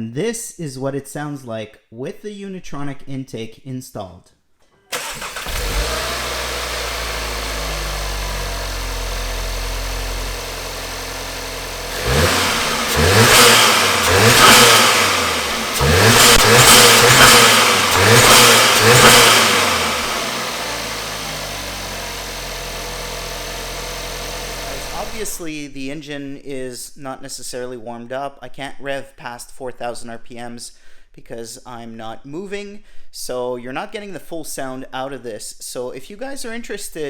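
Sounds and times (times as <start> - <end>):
car engine idling and revving: 4.9 - 25.4.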